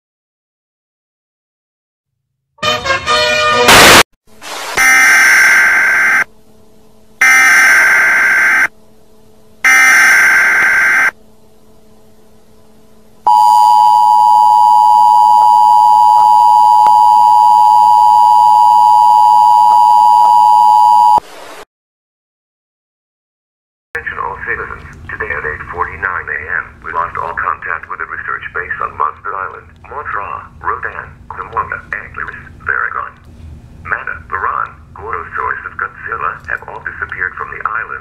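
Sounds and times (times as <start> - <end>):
data header tone bursts: 4.8 - 6.3, 7.2 - 8.7, 9.6 - 11.2
two-tone alert signal: 4.8 - 6.3, 7.2 - 8.7, 9.6 - 11.1.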